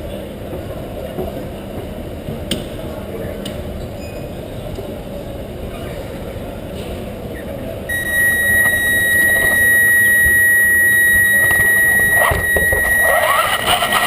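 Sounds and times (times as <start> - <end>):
indoor crowd noise: 0.0 - 14.0
high-pitched electronic tone: 7.9 - 14.0.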